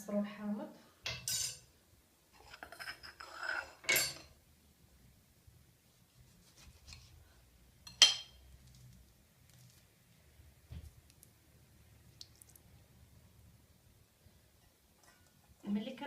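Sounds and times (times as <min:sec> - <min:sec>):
dishes clattering: 0:01.1 - 0:01.7, 0:02.4 - 0:04.4, 0:07.9 - 0:08.4.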